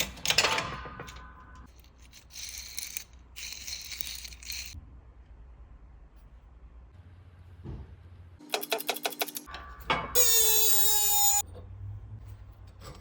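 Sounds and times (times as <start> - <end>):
hand tools clicking and rattling: 0.0 - 4.8.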